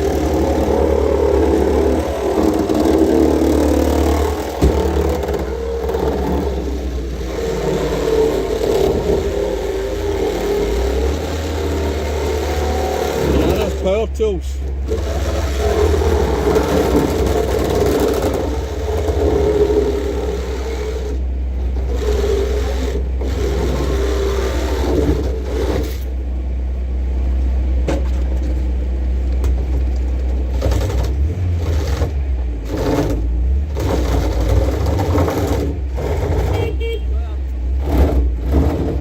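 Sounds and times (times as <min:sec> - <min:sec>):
low drone: 0:00.0 - 0:27.6.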